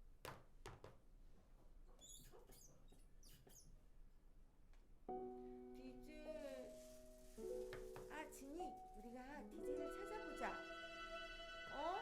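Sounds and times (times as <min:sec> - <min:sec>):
faint high-pitched squeaks: 0:01.9 - 0:03.8
sustained musical chord: 0:08.7 - 0:12.0.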